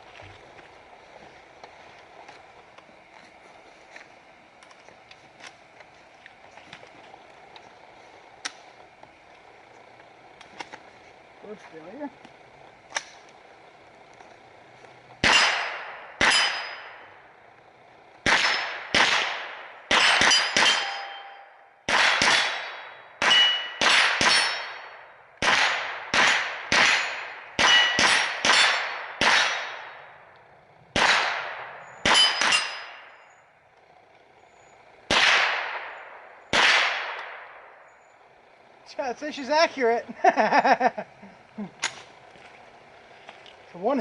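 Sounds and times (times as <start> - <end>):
metallic clang of steel target: 15.2 - 17.1, 18.3 - 19.2, 19.9 - 30.0, 31.0 - 33.2
rifle shots: 15.2 - 17.1, 18.2 - 30.2, 30.9 - 33.2, 35.1 - 37.8.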